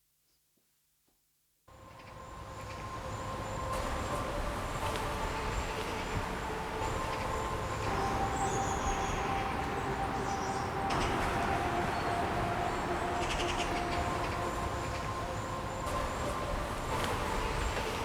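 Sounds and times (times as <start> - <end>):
held drone notes: 2.2 - 18.0
rustling leaves: 3.2 - 18.0.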